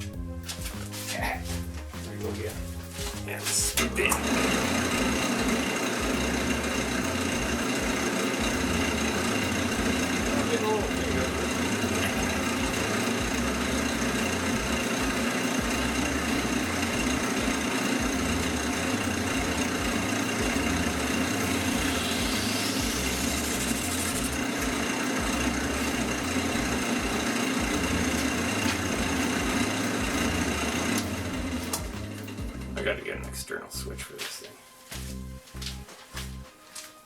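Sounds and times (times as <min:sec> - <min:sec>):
wood lathe motor humming: 0:03.7 - 0:33.0.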